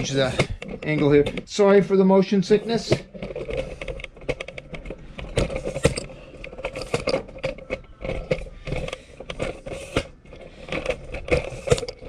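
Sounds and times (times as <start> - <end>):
hard objects being moved about: 0.0 - 12.0.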